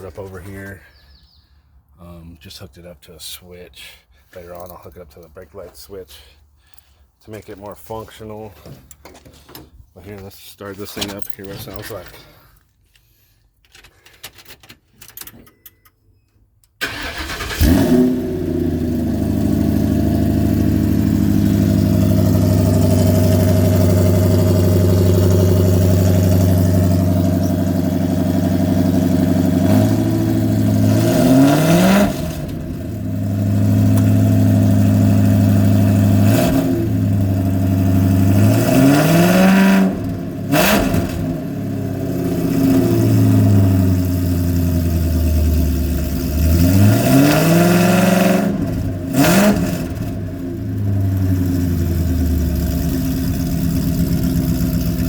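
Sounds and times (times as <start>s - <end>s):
car engine starting and idling: 16.6s - 55.0s
car engine revving: 16.8s - 55.0s.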